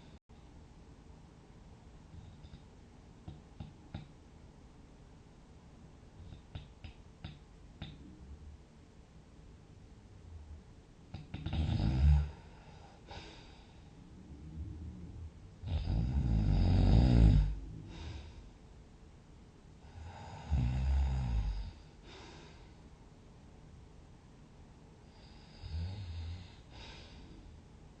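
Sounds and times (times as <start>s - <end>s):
person snoring: 11.2s - 13.6s, 15.6s - 18.4s, 19.8s - 22.6s, 25.1s - 27.2s
soft breath: 12.3s - 16.0s, 17.3s - 18.7s, 21.4s - 23.0s, 25.0s - 27.7s.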